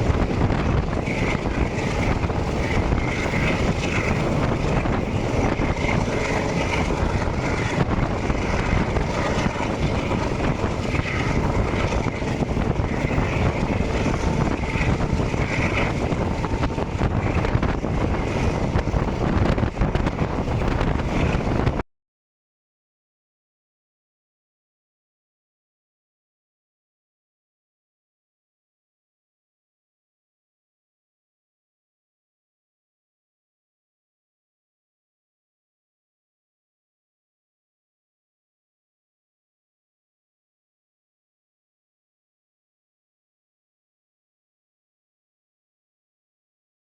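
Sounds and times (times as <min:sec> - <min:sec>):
train wheels rumbling on rails: 0:00.0 - 0:21.8
wind on microphone: 0:00.0 - 0:21.8.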